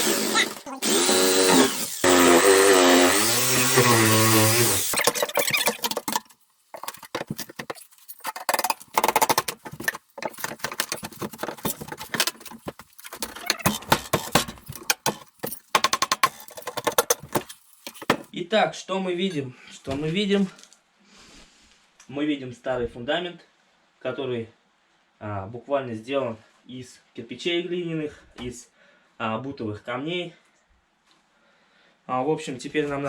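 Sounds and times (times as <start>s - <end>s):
power saw cutting: 0.0s - 18.3s
wood and debris clattering: 0.0s - 18.3s.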